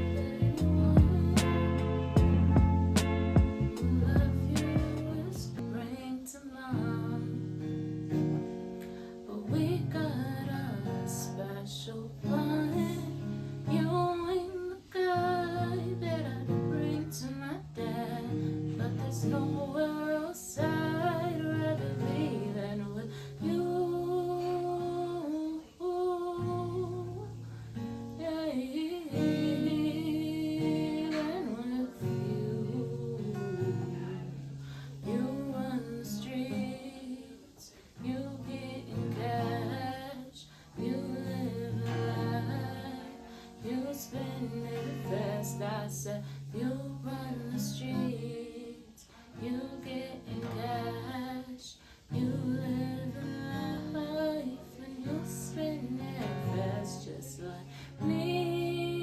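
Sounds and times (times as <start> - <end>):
person singing: 0.0 - 7.4, 28.2 - 59.0
strummed acoustic guitar: 0.0 - 59.0.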